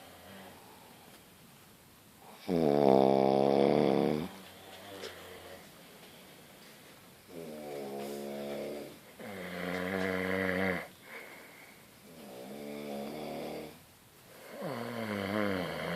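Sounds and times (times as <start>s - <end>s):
heavy buzzing snoring: 2.2s - 5.7s, 7.3s - 11.4s, 12.0s - 15.9s.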